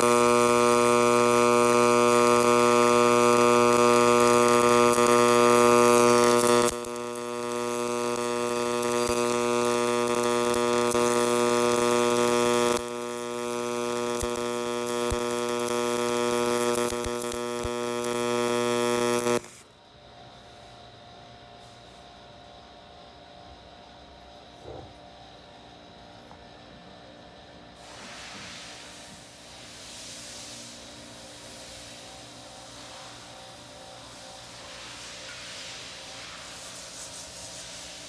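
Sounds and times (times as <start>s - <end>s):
welding arc buzzing: 0.0s - 19.7s, 28.6s - 38.0s.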